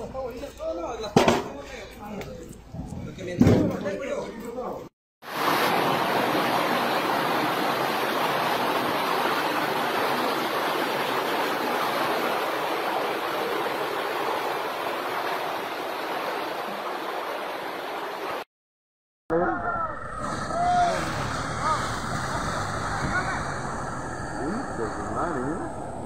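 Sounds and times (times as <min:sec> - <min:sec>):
heavy water rushing: 0:05.2 - 0:18.4, 0:20.2 - 0:26.0.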